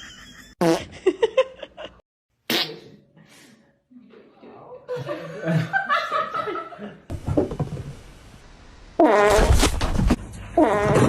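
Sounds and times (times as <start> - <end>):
loud fart-like buzzing: 0.6 - 0.9, 9.0 - 11.0.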